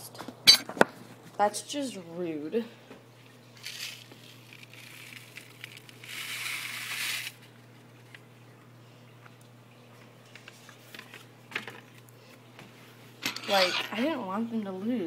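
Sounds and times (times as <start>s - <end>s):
steady low hum: 0.0s - 15.0s
rustling crinkling noise: 3.2s - 8.3s, 9.2s - 13.0s.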